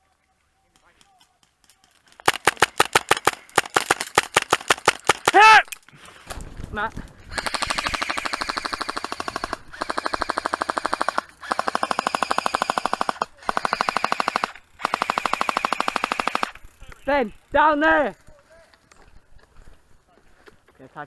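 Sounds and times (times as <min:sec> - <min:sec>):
airsoft gun firing full auto: 0:02.1 - 0:05.5, 0:07.3 - 0:16.6.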